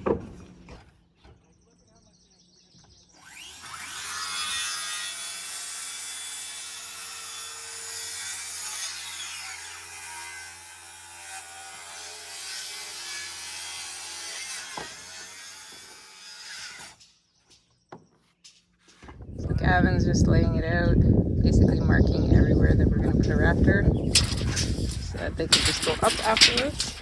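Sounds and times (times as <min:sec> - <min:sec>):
power saw cutting wood: 0:03.2 - 0:17.0, 0:24.1 - 0:27.0.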